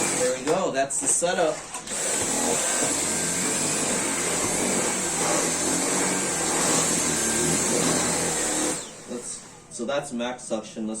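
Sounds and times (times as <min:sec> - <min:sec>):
vacuum motor whine: 0:00.0 - 0:00.5, 0:01.8 - 0:09.9.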